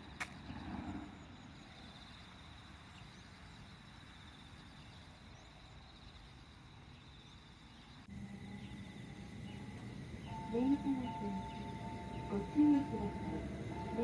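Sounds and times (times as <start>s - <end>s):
high insect trill: 1.4s - 14.0s
low rumble: 8.1s - 14.0s
steady low hum: 8.1s - 14.0s.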